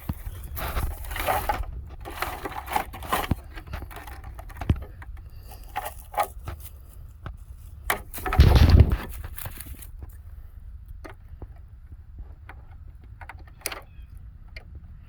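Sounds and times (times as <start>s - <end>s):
objects clicking and knocking: 0.0s - 6.7s, 7.9s - 10.2s
objects rustling: 0.0s - 10.2s.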